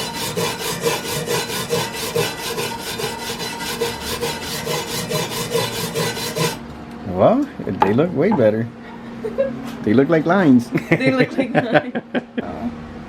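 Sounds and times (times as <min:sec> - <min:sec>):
wire brush scrubbing steel: 0:00.0 - 0:06.6.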